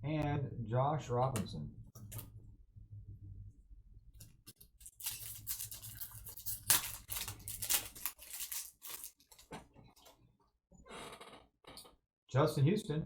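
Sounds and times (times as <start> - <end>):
foil wrapper crinkling and ripping: 4.4 - 10.1.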